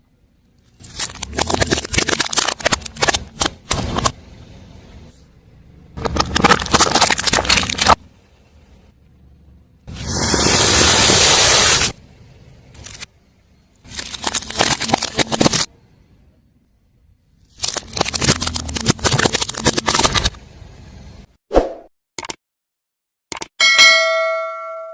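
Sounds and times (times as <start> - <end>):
tyre crushing brittle objects: 0.7 - 4.1, 6.0 - 8.0, 13.9 - 15.7, 17.5 - 20.4.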